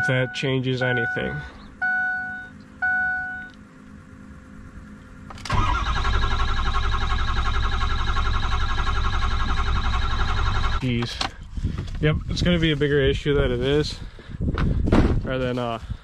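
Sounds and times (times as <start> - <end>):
diesel engine cranking: 5.2 - 12.0.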